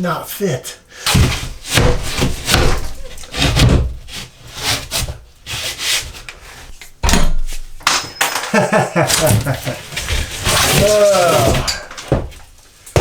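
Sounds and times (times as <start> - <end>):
rasping against wood: 1.0 - 6.7.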